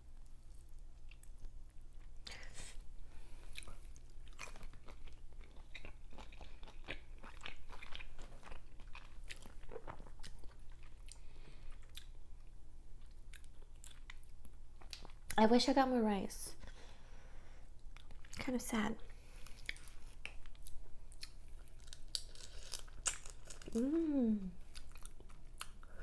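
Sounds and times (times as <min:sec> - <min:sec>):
close chewing and biting: 0:03.4 - 0:12.2, 0:19.4 - 0:24.0, 0:24.6 - 0:26.0.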